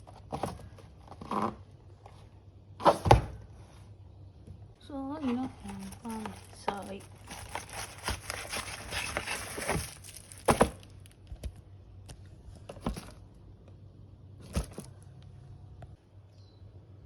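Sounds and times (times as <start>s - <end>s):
crinkling and rustling: 5.0s - 13.4s, 14.4s - 15.4s.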